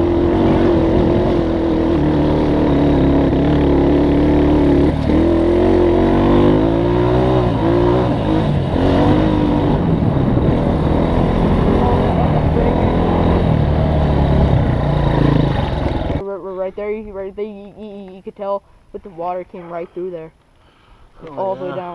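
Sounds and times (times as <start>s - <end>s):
off-road vehicle engine revving: 0.0s - 16.2s.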